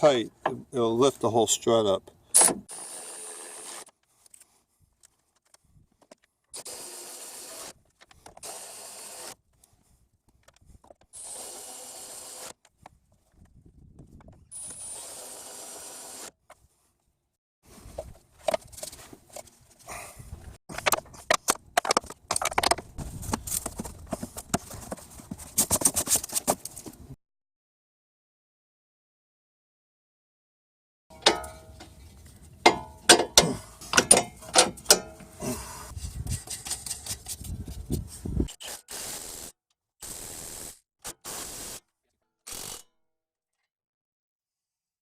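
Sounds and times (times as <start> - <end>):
hand tools clicking on metal: 31.1 - 31.9, 32.6 - 35.4
cordless impact wrench bursts: 38.6 - 41.8, 42.5 - 42.9.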